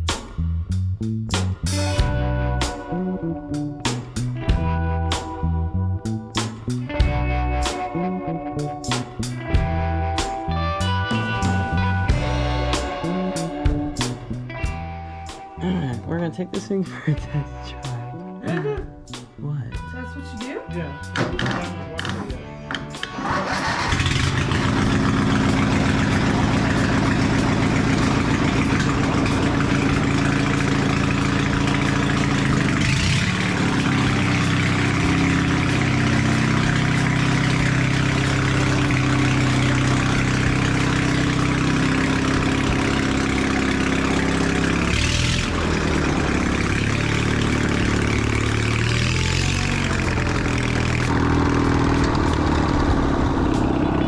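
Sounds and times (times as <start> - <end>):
lawn mower engine revving: 23.0 - 54.0.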